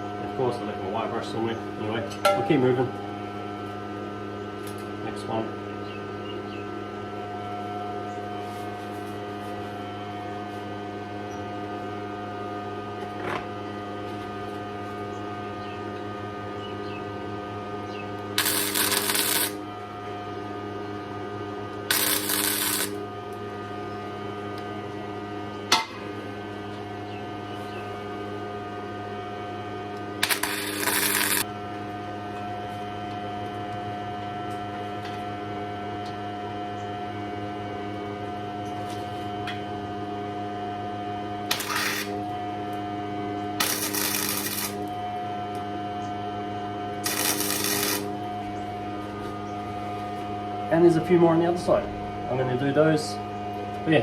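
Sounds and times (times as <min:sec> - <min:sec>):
steady electrical hum: 0:00.0 - 0:54.0
welding tacks: 0:18.4 - 0:19.6, 0:21.9 - 0:23.0, 0:30.2 - 0:31.4, 0:41.5 - 0:42.1, 0:43.6 - 0:44.9, 0:47.0 - 0:48.1.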